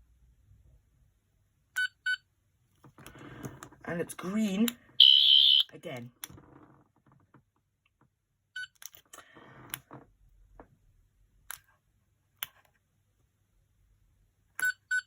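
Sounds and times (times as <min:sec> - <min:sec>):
short electronic beeps: 0:05.0 - 0:05.7.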